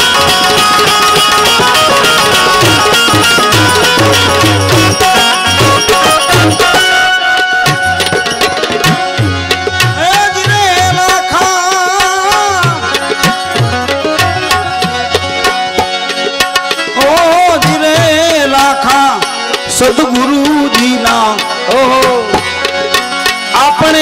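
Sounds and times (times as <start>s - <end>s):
wavering melody line: 0.0s - 10.0s
tabla playing steady rhythm: 0.0s - 24.0s.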